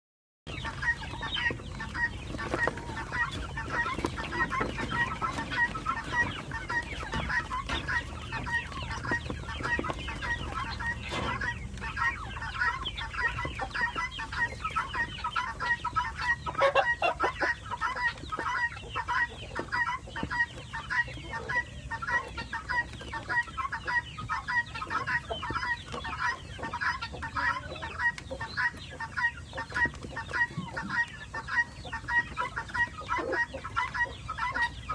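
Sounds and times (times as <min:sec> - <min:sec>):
chickens clucking: 0:00.5 - 0:34.9.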